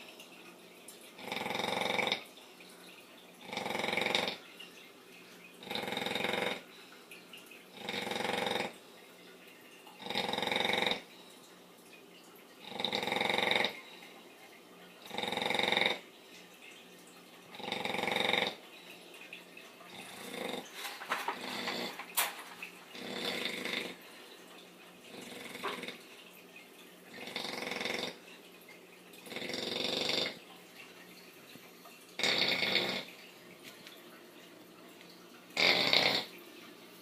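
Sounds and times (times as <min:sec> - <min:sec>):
dog snoring: 0:01.2 - 0:02.3, 0:03.4 - 0:04.4, 0:05.6 - 0:06.7, 0:07.7 - 0:08.8, 0:10.0 - 0:11.1, 0:12.6 - 0:13.8, 0:15.0 - 0:16.0, 0:17.5 - 0:18.6, 0:19.9 - 0:24.0, 0:25.1 - 0:26.0, 0:27.2 - 0:28.2, 0:29.2 - 0:30.4, 0:32.2 - 0:33.1, 0:35.6 - 0:36.3.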